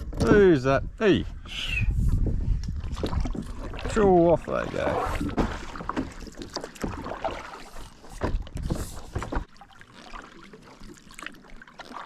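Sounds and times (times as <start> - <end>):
water sloshing: 2.6 - 12.0
knocks against kayak hull: 8.2 - 9.5.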